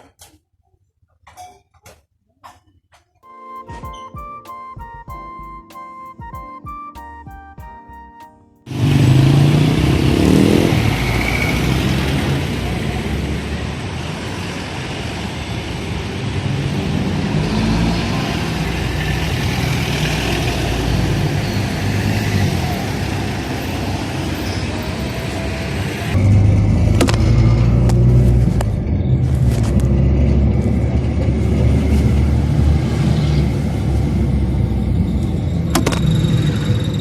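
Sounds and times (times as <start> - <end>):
background music: 3.2 - 9.6
road traffic rumble: 8.7 - 37.0.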